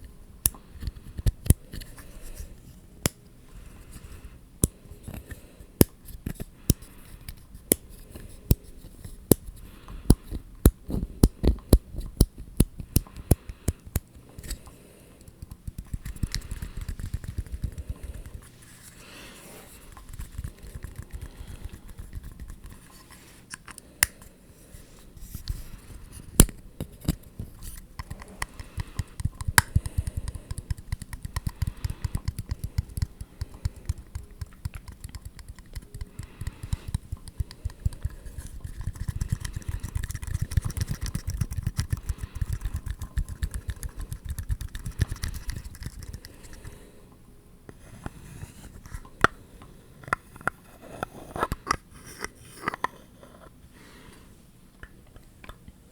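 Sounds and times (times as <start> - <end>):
tapping and scratching on objects: 8.5 - 24.2, 26.4 - 46.8.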